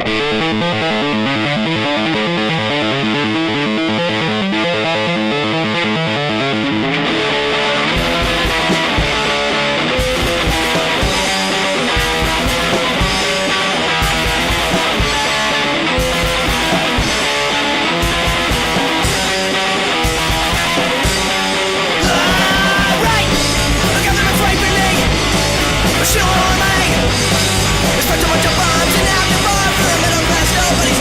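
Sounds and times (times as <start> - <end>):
bass guitar: 0.0 - 31.0
electric guitar: 0.0 - 31.0
drums and cymbals: 7.9 - 31.0.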